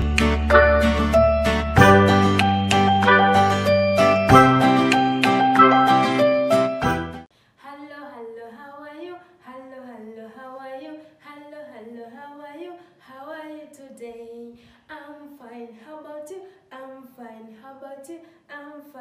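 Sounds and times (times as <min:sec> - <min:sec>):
woman singing unaccompanied: 0:07.6 - 0:19.0.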